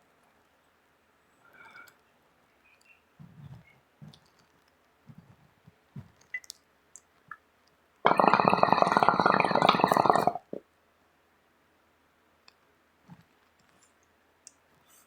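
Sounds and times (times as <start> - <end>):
soft taps and clicks: 2.8 - 7.8
bong water bubbling: 8.0 - 10.6.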